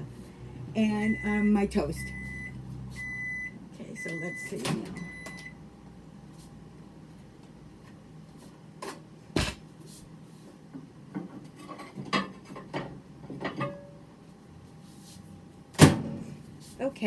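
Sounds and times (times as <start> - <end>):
dishes clinking and knocking: 11.2 - 13.9.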